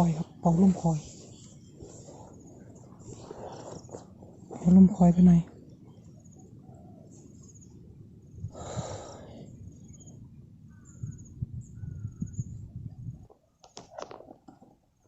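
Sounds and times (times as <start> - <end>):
breathy puff of air: 8.5 - 9.5.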